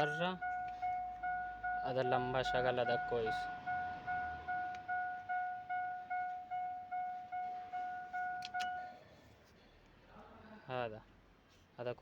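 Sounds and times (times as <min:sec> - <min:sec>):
car warning chime dinging: 0:00.0 - 0:09.1.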